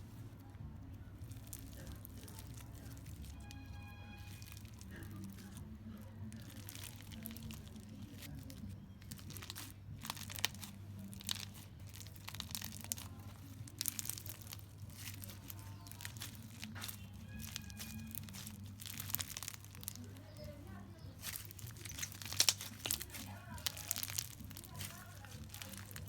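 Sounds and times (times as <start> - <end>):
slime squeezed by hand: 9.1 - 20.0.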